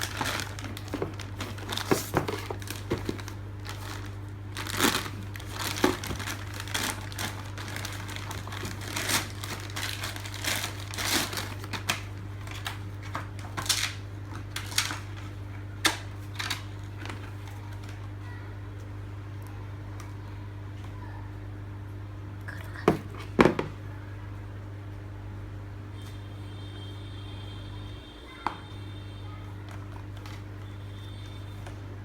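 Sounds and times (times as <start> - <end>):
plastic wrapping crinkling: 0.0 - 18.2.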